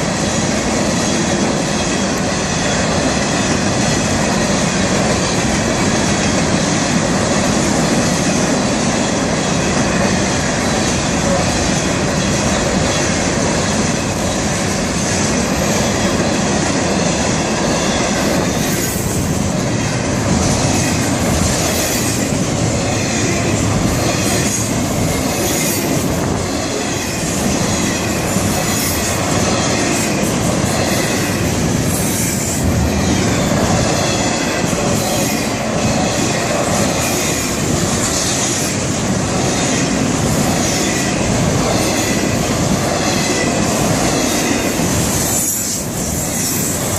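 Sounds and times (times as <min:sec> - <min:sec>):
freight train wheels rumbling: 0:00.0 - 0:46.9.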